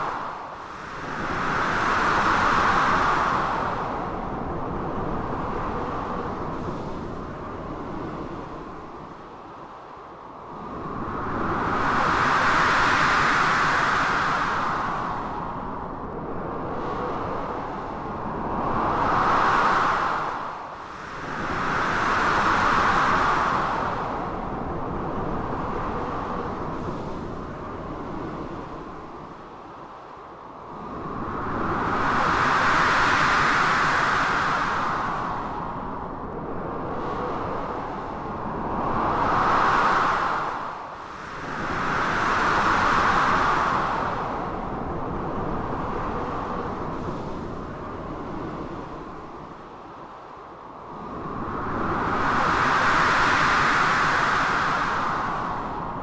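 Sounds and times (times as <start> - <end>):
wind howling in gusts: 30.7 - 56.0.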